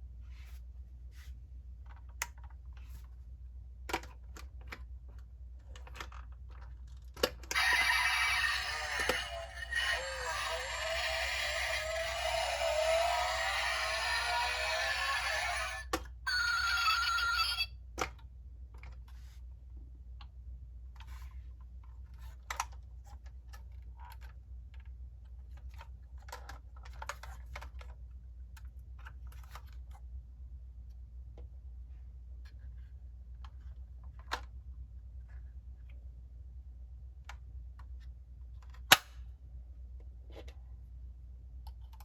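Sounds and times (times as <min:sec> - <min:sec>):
model car and packaging handled: 0:00.3 - 0:17.1, 0:20.9 - 0:30.2, 0:32.4 - 0:36.0.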